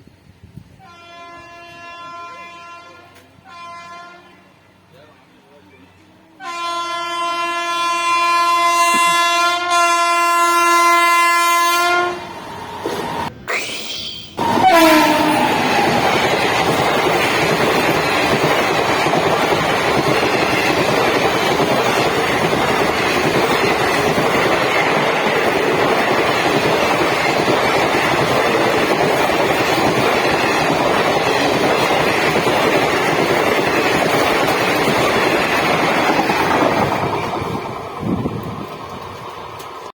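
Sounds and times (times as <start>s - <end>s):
train horn blast: 0.8s - 4.6s, 6.4s - 12.3s, 14.6s - 16.0s
train wheels clattering on rails: 14.4s - 39.9s.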